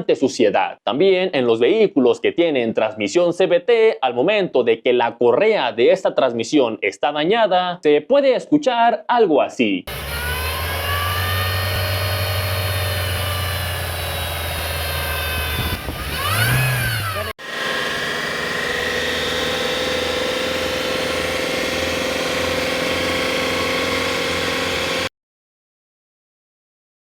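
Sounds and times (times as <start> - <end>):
car engine revving: 9.9 - 25.1
drive belt whine: 9.9 - 25.1.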